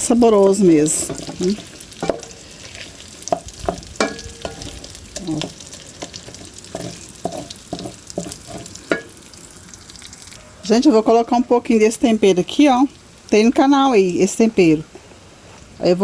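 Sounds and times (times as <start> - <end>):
oil sizzling: 0.0 - 16.0
utensil scraping a pan: 0.9 - 9.2.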